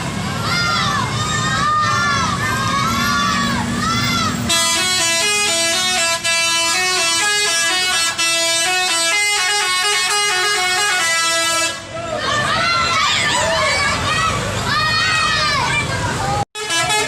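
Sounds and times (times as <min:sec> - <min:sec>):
musical air horns playing tune: 0:04.4 - 0:11.9, 0:16.6 - 0:17.0.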